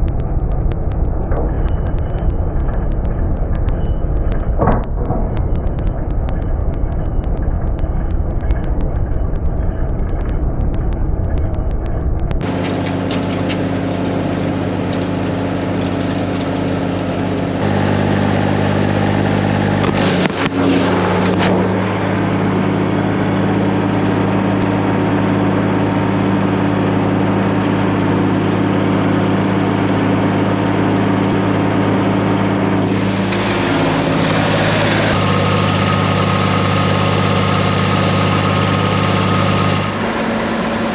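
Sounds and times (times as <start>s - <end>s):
fast even ticking: 0.0s - 17.7s
loud low rumble: 0.0s - 40.9s
tractor diesel engine running: 0.0s - 40.9s.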